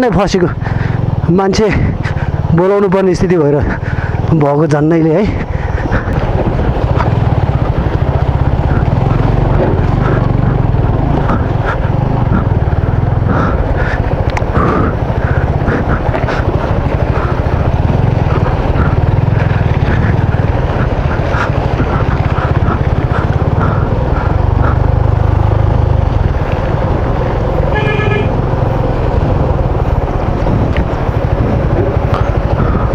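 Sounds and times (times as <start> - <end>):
motorcycle engine rumbling: 0.0 - 32.9.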